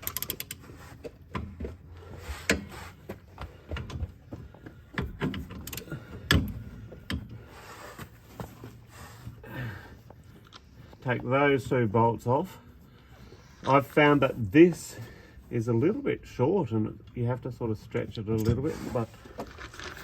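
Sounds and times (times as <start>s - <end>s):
ratchet wrench clicking: 0.0s - 0.6s.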